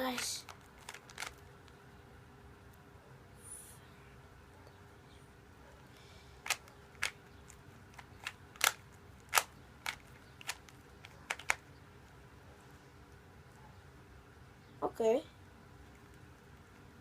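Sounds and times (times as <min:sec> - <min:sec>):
puzzle cube layers clicking: 0:00.0 - 0:01.4, 0:06.5 - 0:11.6.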